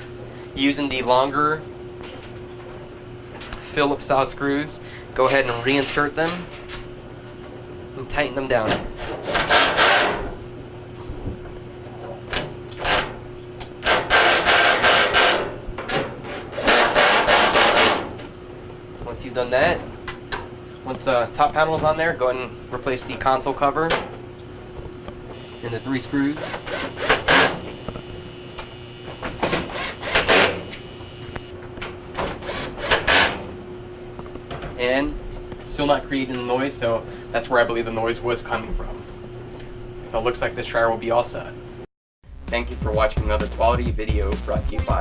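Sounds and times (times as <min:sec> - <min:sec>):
steady hum: 0:00.0 - 0:45.0
screws driven into sheet metal: 0:09.3 - 0:10.2, 0:16.2 - 0:18.0, 0:26.3 - 0:27.6, 0:29.4 - 0:30.7, 0:32.2 - 0:33.4
power screwdriver whirring: 0:26.4 - 0:27.9, 0:29.4 - 0:31.5.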